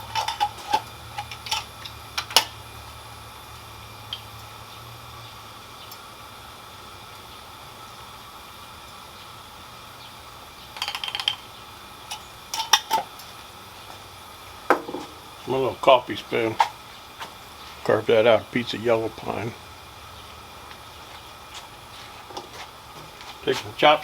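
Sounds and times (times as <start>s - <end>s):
metal cookware clinking: 0.0s - 2.6s, 12.1s - 13.1s
faint steady hum: 0.0s - 24.0s.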